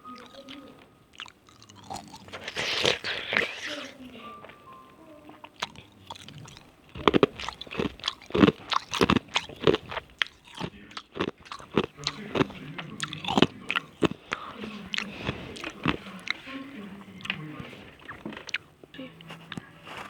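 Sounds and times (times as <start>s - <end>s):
ice crunched between teeth: 1.2s - 4.0s, 5.6s - 16.5s.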